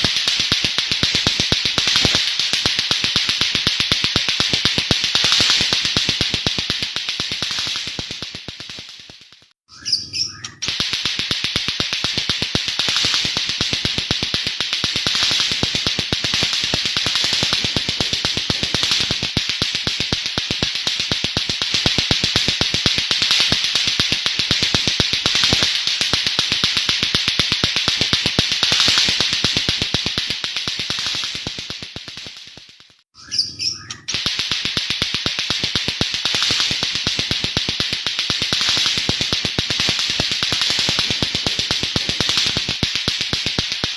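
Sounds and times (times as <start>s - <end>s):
bird singing fast clicking notes: 9.7s - 13.3s, 33.2s - 34.2s.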